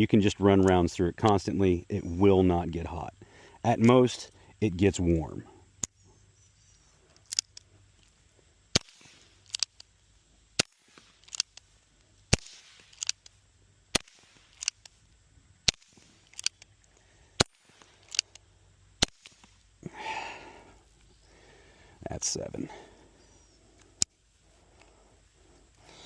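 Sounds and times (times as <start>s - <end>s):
quiet sharp clicks: 0.6s - 1.4s, 7.1s - 8.2s, 8.8s - 10.0s, 10.6s - 15.0s, 15.6s - 19.6s, 23.7s - 24.2s
suppressed revolver shots: 8.7s - 10.0s, 10.6s - 11.7s, 12.3s - 15.0s, 15.6s - 16.7s, 17.4s - 19.6s.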